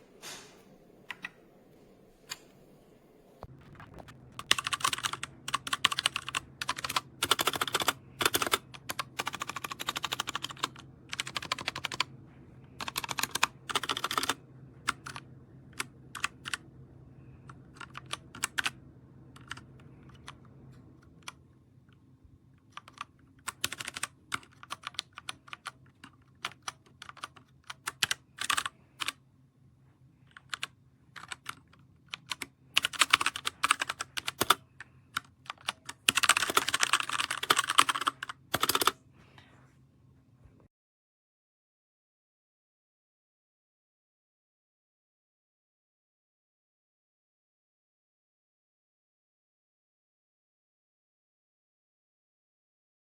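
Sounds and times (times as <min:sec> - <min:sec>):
mechanical keyboard typing: 0:03.5 - 0:21.4, 0:22.6 - 0:29.2, 0:30.3 - 0:39.0.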